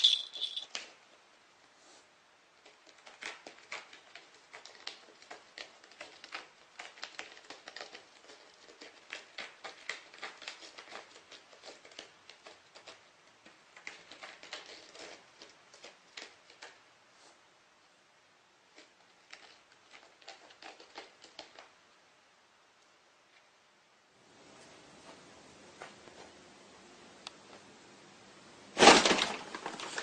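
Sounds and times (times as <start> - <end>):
cat scrabbling and pawing: 2.6 - 16.8.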